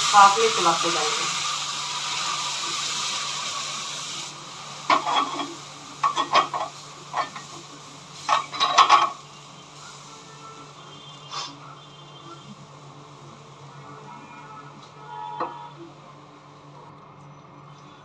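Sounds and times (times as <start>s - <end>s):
milk sizzling in hot fat: 0.0s - 16.9s
spoon scraping a pan: 4.9s - 7.6s, 8.2s - 9.2s.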